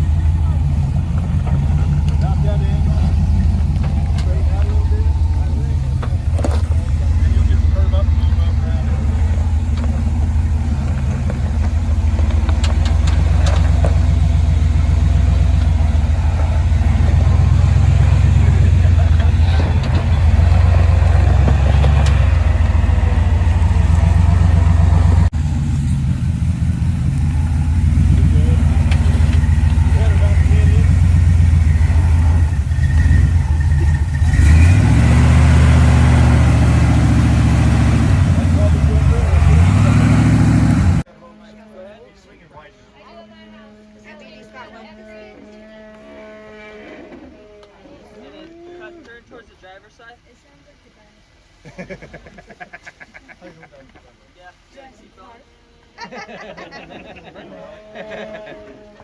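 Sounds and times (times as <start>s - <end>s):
engine running at low revs: 0.0s - 41.1s.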